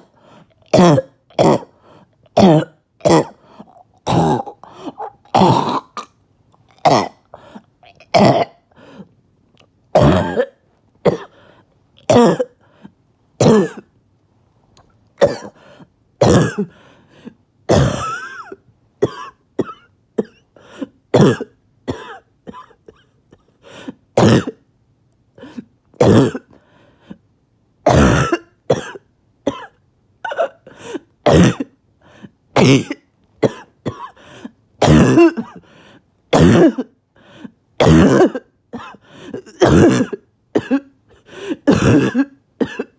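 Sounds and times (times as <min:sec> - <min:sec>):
person coughing harshly: 0:00.0 - 0:01.8, 0:02.4 - 0:06.1, 0:06.8 - 0:08.7, 0:10.0 - 0:11.4, 0:12.1 - 0:12.6, 0:13.4 - 0:13.9, 0:15.2 - 0:15.6, 0:16.2 - 0:16.8, 0:17.7 - 0:23.5, 0:24.2 - 0:24.6, 0:25.4 - 0:26.6, 0:27.9 - 0:31.8, 0:32.6 - 0:35.7, 0:36.3 - 0:37.0, 0:37.8 - 0:42.9.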